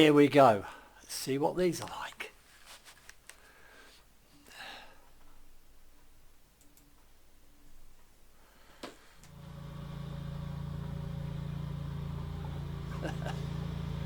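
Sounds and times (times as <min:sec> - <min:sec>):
low droning hum: 0:09.3 - 0:14.0.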